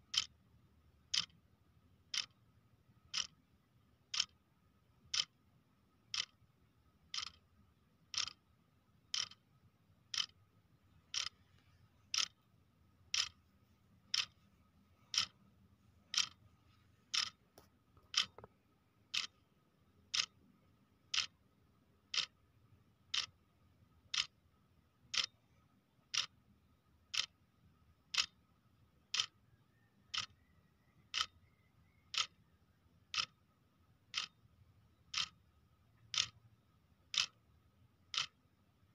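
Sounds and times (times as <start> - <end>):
clock ticking: 0.0 - 1.4, 2.1 - 2.4, 3.0 - 5.4, 6.0 - 6.4, 7.0 - 10.4, 11.1 - 11.5, 12.1 - 12.4, 13.1 - 13.5, 14.1 - 14.4, 15.0 - 15.4, 16.1 - 16.4, 17.1 - 18.5, 19.1 - 19.4, 20.1 - 20.5, 21.1 - 21.4, 22.1 - 22.4, 23.1 - 23.4, 24.0 - 24.4, 25.1 - 25.4, 26.1 - 26.4, 27.1 - 27.4, 28.1 - 29.4, 30.1 - 30.4, 31.1 - 31.4, 32.1 - 32.4, 33.1 - 33.4, 34.1 - 36.5, 37.1 - 38.6
faint steady tone: 0.0 - 38.9.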